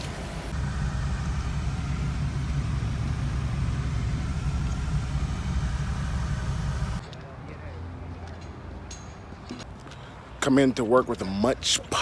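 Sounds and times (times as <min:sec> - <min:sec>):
car engine rumble: 0:00.0 - 0:07.0.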